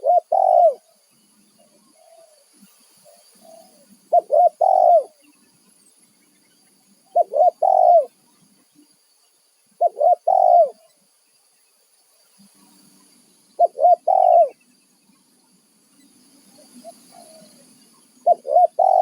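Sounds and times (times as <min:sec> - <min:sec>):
dove cooing: 0:00.0 - 0:00.9, 0:03.4 - 0:05.2, 0:07.1 - 0:08.1, 0:09.8 - 0:10.8, 0:13.6 - 0:14.6, 0:18.2 - 0:19.0.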